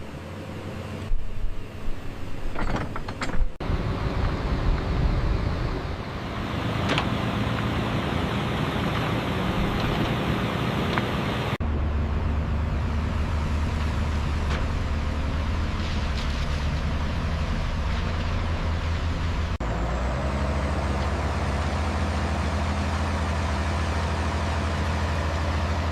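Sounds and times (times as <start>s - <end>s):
low engine-like rumble: 0.0s - 19.6s.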